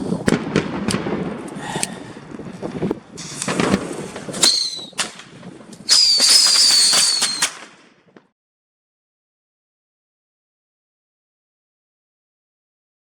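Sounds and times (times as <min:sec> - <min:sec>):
fireworks popping and crackling: 0:00.0 - 0:08.4
firework whistle falling in pitch: 0:04.4 - 0:05.0, 0:05.9 - 0:07.6.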